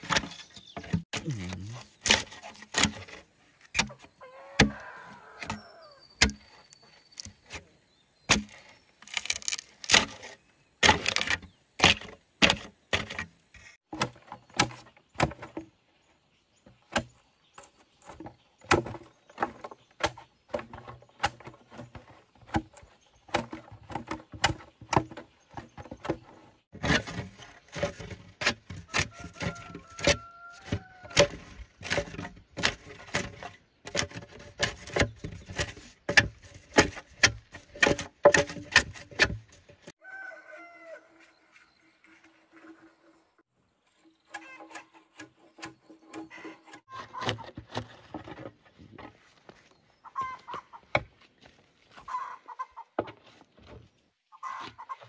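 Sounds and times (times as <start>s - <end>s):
knocks and clatters of hand work: 16.6s - 40.0s.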